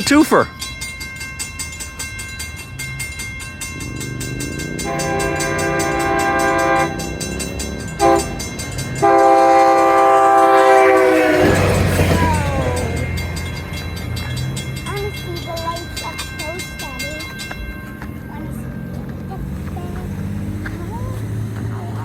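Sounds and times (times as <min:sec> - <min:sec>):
railroad crossing bell ringing: 0:00.0 - 0:22.0
train horn blasts: 0:04.8 - 0:13.6.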